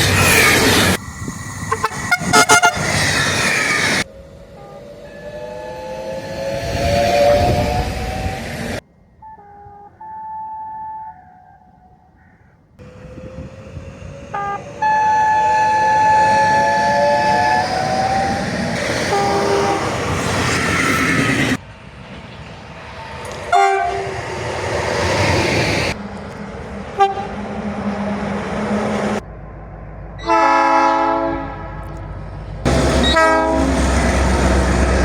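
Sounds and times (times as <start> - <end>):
rising whine: 0.0 - 8.8, 12.8 - 21.6
train rumble and clatter: 0.0 - 8.8, 12.8 - 35.0
short train horn toots: 1.7 - 3.0, 18.9 - 20.0, 23.5 - 24.2, 27.0 - 27.4, 30.2 - 32.0, 32.7 - 34.0
train horn blast: 1.7 - 3.0, 4.4 - 8.0, 9.2 - 11.2, 12.8 - 18.2, 18.8 - 20.2, 23.5 - 24.2, 26.9 - 28.0, 30.2 - 32.1, 32.7 - 35.0.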